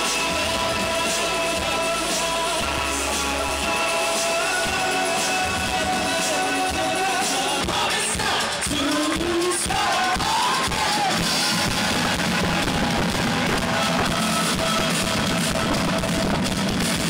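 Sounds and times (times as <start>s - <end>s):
person singing: 0.0s - 16.7s
rock band playing: 0.0s - 17.0s.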